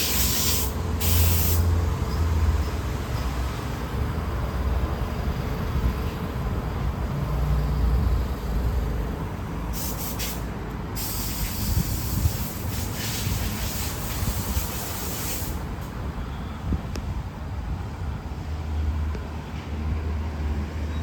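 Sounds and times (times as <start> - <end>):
bursts of hiss: 0.0 - 1.7, 9.7 - 15.9
vehicle engine rumbling: 0.0 - 20.3.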